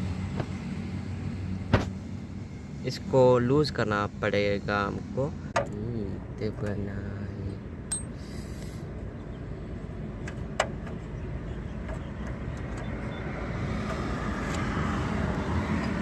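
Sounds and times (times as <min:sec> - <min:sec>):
low rumble of road traffic: 0:00.0 - 0:16.0
vehicle approaching: 0:00.0 - 0:16.0.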